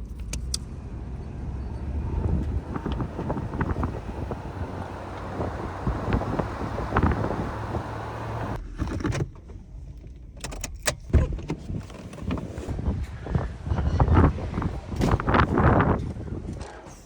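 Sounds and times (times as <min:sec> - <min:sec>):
vehicle rumble: 0:00.0 - 0:17.0
wind noise: 0:01.4 - 0:08.9, 0:11.2 - 0:17.0.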